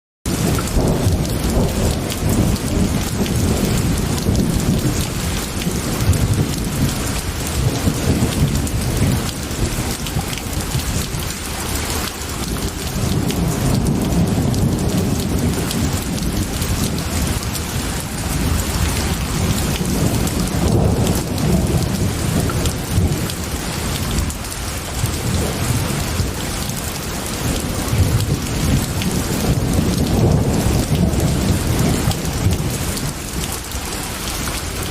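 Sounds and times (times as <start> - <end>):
heavy rain: 0.2 - 34.9
low rolling thunder: 0.3 - 34.9.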